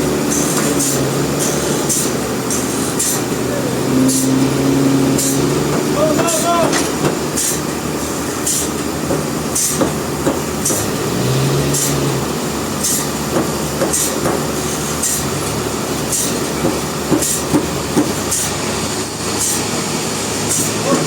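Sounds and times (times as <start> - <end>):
sawmill machinery running: 0.0 - 21.0.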